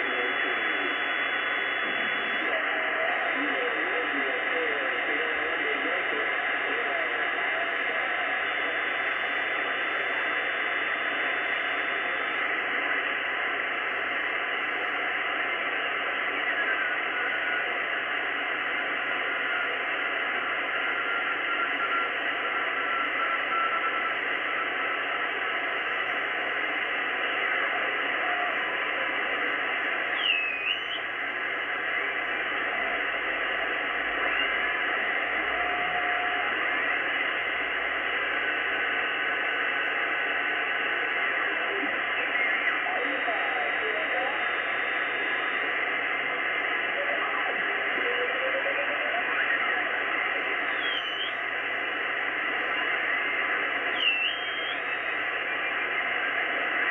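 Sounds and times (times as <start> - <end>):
faint drifting radio whistles: 0.0 - 56.9
radio hiss: 0.0 - 56.9
swooping radio whistle: 26.1 - 32.1, 49.2 - 56.7.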